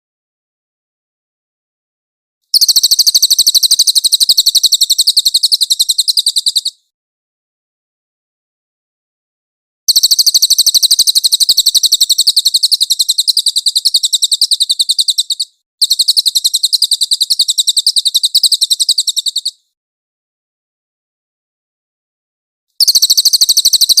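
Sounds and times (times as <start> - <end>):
songbird trilling high chirps: 2.6 - 6.8, 9.9 - 19.6, 22.8 - 24.0.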